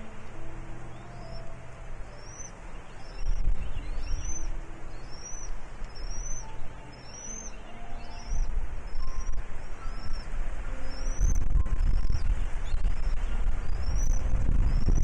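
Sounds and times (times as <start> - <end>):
bird calling high thin notes: 0.0 - 14.2
wind rumble on microphone: 0.0 - 15.0.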